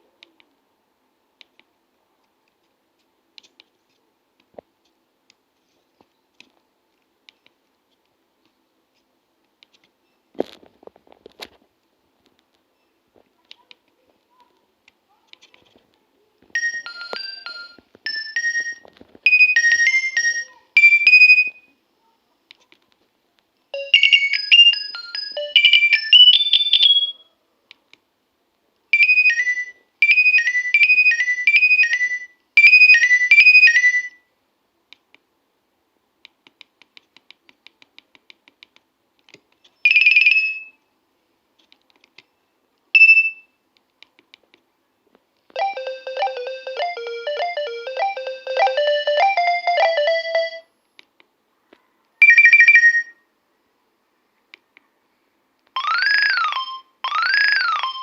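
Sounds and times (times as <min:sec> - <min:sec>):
high beeping ringtone melodies: 0:16.6 - 0:21.7, 0:23.8 - 0:27.2, 0:29.0 - 0:34.2, 0:45.6 - 0:50.7, 0:52.2 - 0:53.2, 0:55.8 - 0:58.0.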